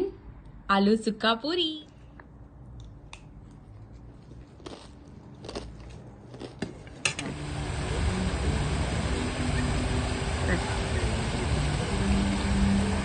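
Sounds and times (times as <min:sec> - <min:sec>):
loud steady rushing noise: 0:07.2 - 0:13.0.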